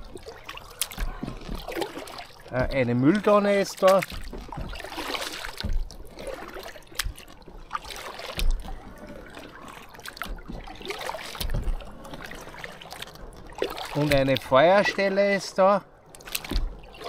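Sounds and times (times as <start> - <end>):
paddle dipping into water: 0.0 - 17.0
water dripping off paddle: 0.0 - 17.0
low thumps: 0.9 - 9.3, 10.0 - 12.4.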